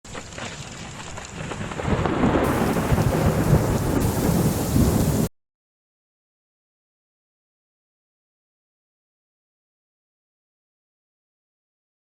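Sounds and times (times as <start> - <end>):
heavy rain: 0.1 - 5.3
strong wind rumble: 2.0 - 5.3.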